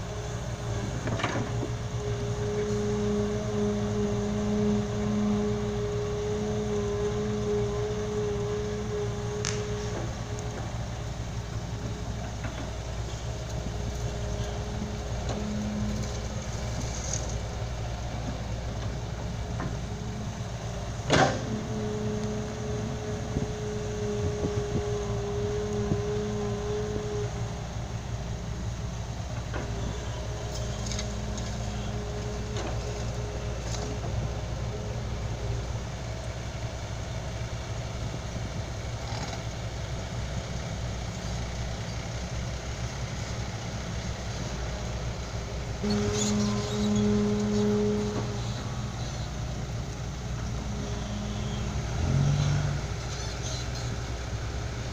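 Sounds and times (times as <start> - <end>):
heavy vehicle engine humming: 0.0 - 54.9
steady high-pitched tone: 45.8 - 52.8.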